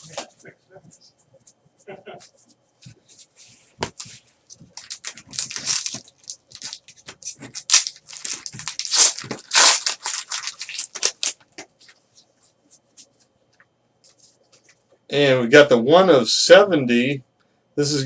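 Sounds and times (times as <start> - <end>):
card wrappers crinkling: 3.9 - 12.0.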